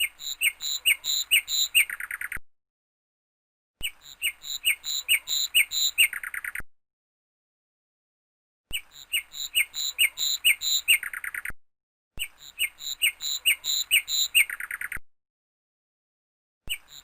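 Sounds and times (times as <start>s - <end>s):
small bird chirping and trilling: 0.0s - 2.4s, 3.8s - 6.6s, 8.7s - 11.6s, 12.2s - 15.0s, 16.7s - 17.0s.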